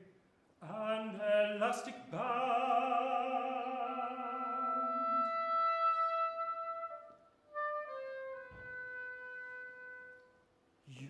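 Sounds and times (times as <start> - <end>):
baritone singing: 0.0 - 10.1
sustained woodwind notes: 3.6 - 10.5.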